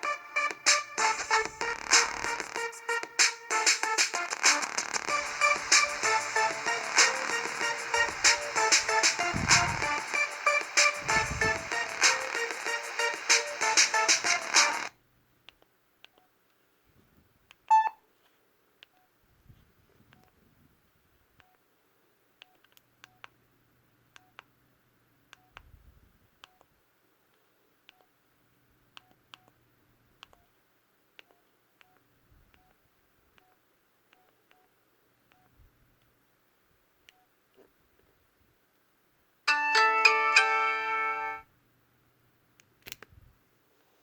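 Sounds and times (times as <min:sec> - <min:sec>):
key beeps: 0:17.7 - 0:18.0.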